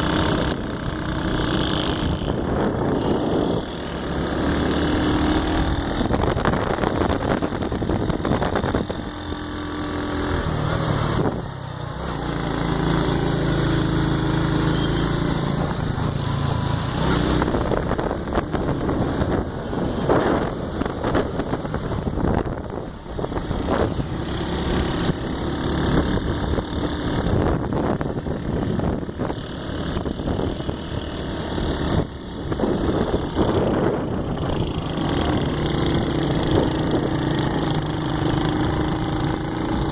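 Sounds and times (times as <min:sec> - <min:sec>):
vehicle engine running: 0:00.0 - 0:39.9
constant rushing noise: 0:15.5 - 0:39.9.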